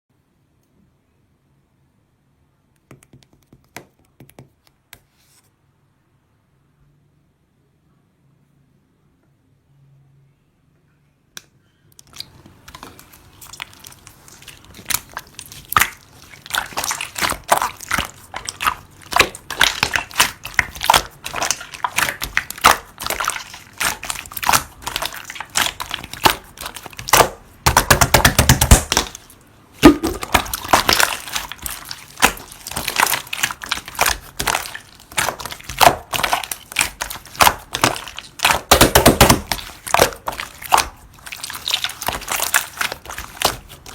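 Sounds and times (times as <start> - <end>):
slime squished by hand: 12.0 - 43.9.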